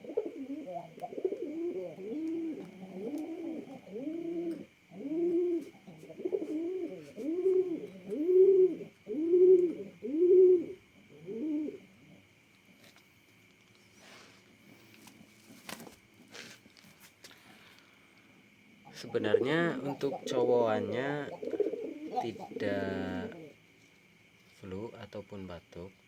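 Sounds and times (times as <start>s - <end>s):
pigeon cooing: 0.0s - 12.3s, 18.8s - 23.7s.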